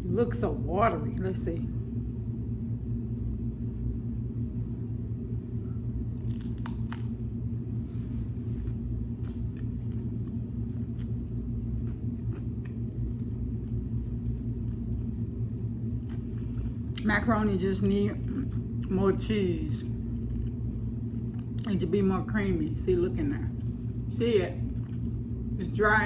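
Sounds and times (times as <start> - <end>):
steady low rumble: 0.0 - 26.0.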